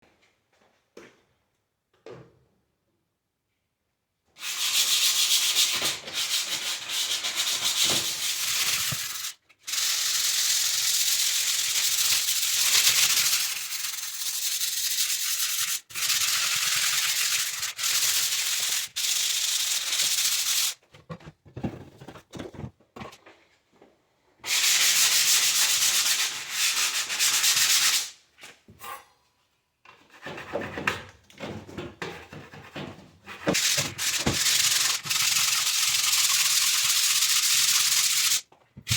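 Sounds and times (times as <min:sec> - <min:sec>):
sanding rasping scrape: 0:04.4 - 0:20.8, 0:24.5 - 0:28.1, 0:33.3 - 0:38.9.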